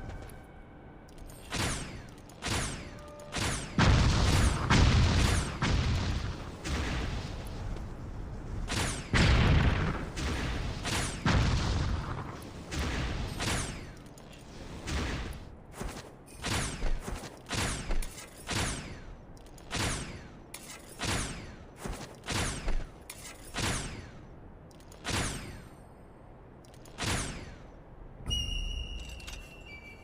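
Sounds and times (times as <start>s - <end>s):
sharp shot-like blasts: 1.5s - 7.4s.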